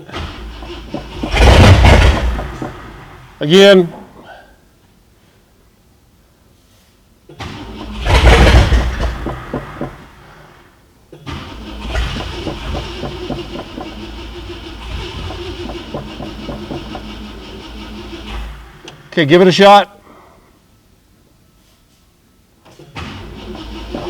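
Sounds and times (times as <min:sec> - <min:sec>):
car engine starting and running: 0:00.0 - 0:04.0, 0:07.4 - 0:10.7, 0:11.3 - 0:19.5, 0:23.0 - 0:24.0
engine cranking: 0:00.0 - 0:04.0, 0:07.4 - 0:10.7, 0:11.3 - 0:19.5, 0:22.9 - 0:24.0.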